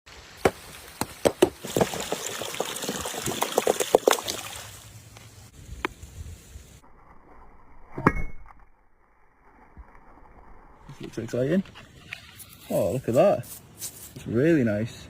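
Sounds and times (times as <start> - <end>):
stones knocking and clattering: 0.4 - 4.4.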